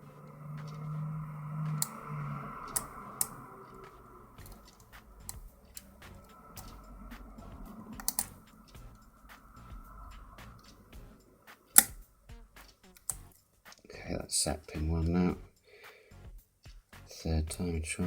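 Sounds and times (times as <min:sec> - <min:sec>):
low steady hum: 0:00.0 - 0:15.6
faint scraping of lock pick: 0:01.6 - 0:13.8
lock pick clicking: 0:02.7 - 0:06.9, 0:08.0 - 0:09.0, 0:10.5 - 0:13.8.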